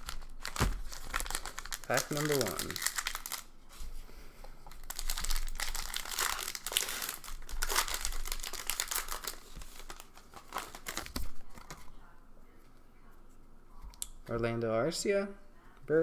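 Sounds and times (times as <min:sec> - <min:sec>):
wrapper tearing and crinkling: 0:00.0 - 0:03.5, 0:04.7 - 0:11.9.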